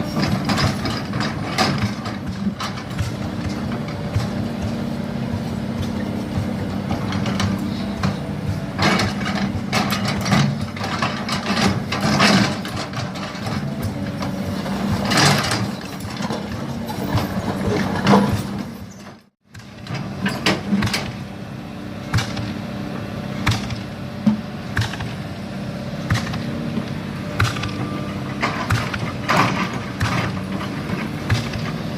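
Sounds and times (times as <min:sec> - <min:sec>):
excavator diesel engine running: 0:00.0 - 0:31.9.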